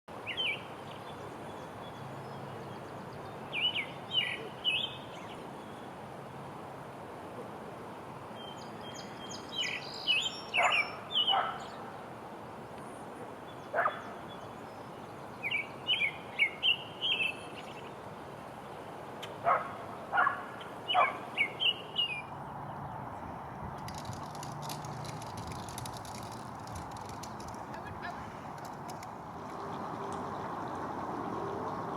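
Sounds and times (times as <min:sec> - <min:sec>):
robin singing: 0:00.2 - 0:05.8, 0:08.4 - 0:11.9, 0:13.5 - 0:18.0, 0:20.6 - 0:23.2.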